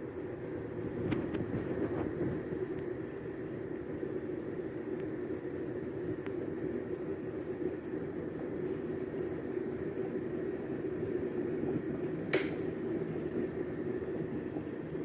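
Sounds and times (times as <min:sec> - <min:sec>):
steady low hum: 0:00.0 - 0:15.0
sharp click: 0:12.3 - 0:12.6.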